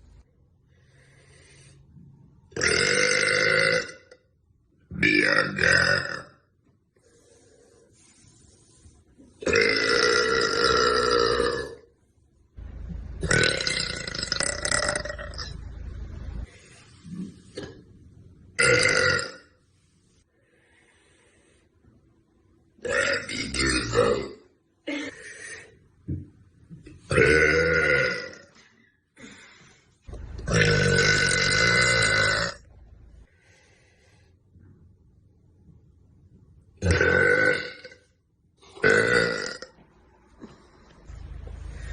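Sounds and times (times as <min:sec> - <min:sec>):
woman burping: 0:02.6 - 0:04.2, 0:09.4 - 0:11.8, 0:18.6 - 0:19.4, 0:22.8 - 0:25.2, 0:27.1 - 0:28.6, 0:30.5 - 0:32.6, 0:36.8 - 0:38.0, 0:38.7 - 0:39.8.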